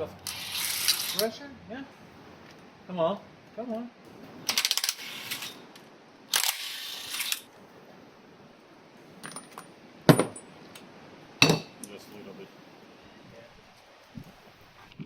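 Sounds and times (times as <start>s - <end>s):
metallic clinks and knocks: 9.2s - 10.5s.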